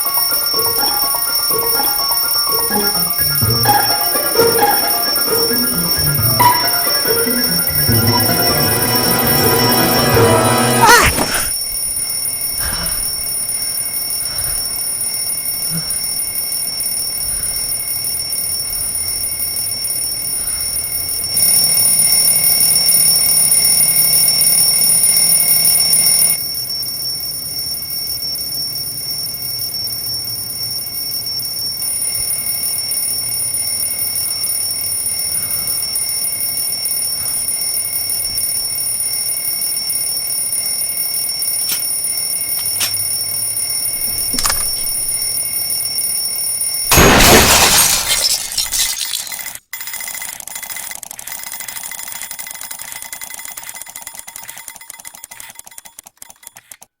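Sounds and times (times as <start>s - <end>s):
alarm clock ringing: 0.0s - 12.7s.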